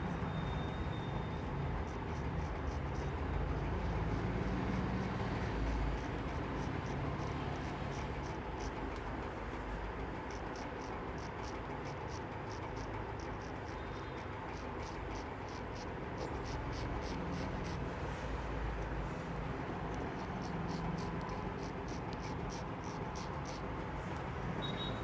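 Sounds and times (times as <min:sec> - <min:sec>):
steady background hum: 0:00.0 - 0:25.0
razor scraping stubble: 0:01.4 - 0:08.8, 0:10.2 - 0:18.5, 0:19.8 - 0:23.6.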